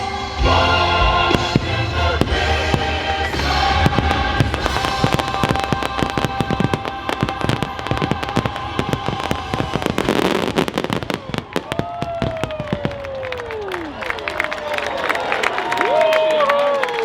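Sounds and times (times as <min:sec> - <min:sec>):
loud show music: 0:00.0 - 0:11.1
fireworks bangs and crackles: 0:00.6 - 0:13.9.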